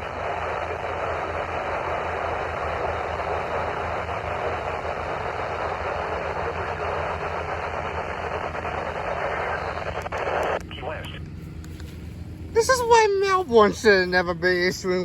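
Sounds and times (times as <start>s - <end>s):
radio static hiss: 0.0s - 11.9s
low hum: 0.0s - 15.0s.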